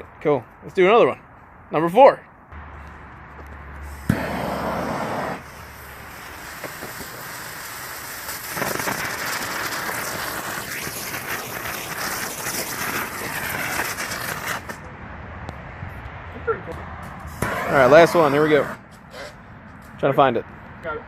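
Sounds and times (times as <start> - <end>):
firework crackles: 3.7 - 14.9, 17.2 - 18.7
firework spinner hissing: 3.7 - 14.9, 17.2 - 19.4.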